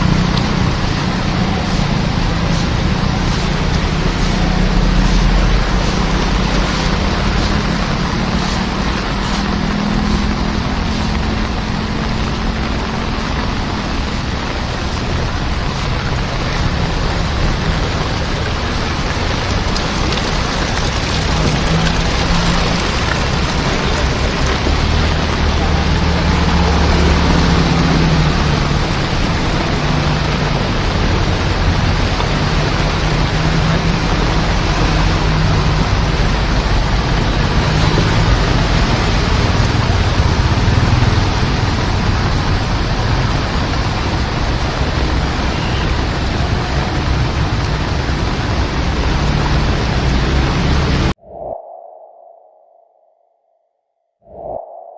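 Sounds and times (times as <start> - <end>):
engine hum: 0.0 - 51.2
heavy rain: 0.0 - 51.2
vehicle driving through flood water: 0.0 - 51.2.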